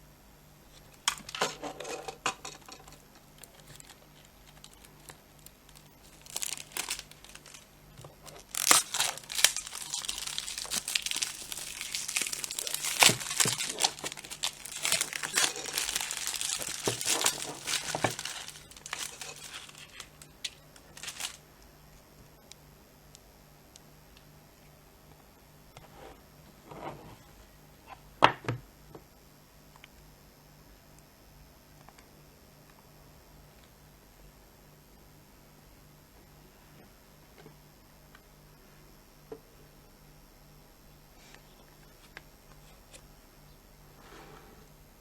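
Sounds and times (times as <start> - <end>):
packaging crinkling and tearing: 2.8 - 21.4.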